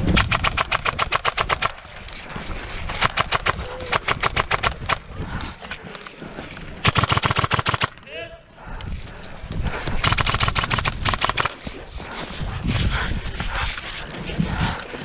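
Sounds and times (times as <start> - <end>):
airsoft gun firing full-auto: 0.2 - 1.7, 6.8 - 8.0, 10.0 - 11.5.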